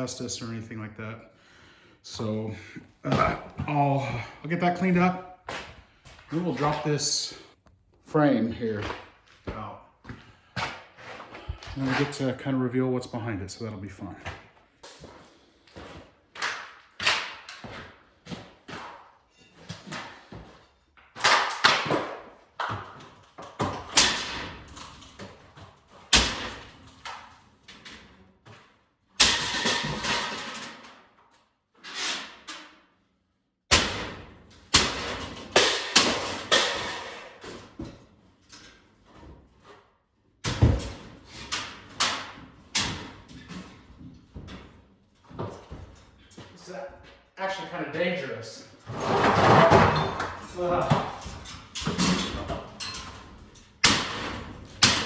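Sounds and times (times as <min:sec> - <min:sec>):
pieces crashing down: 0:29.2 - 0:31.0, 0:33.7 - 0:37.6, 0:48.9 - 0:55.0.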